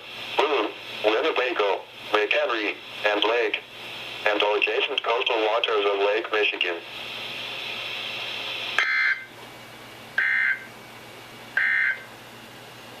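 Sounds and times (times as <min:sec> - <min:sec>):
radio hiss: 0:00.0 - 0:09.3.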